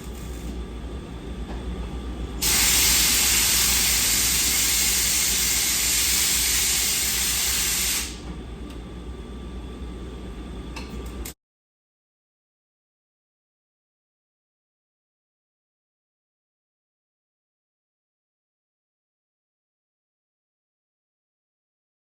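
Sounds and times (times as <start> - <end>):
loud steady hiss: 2.4 - 8.2.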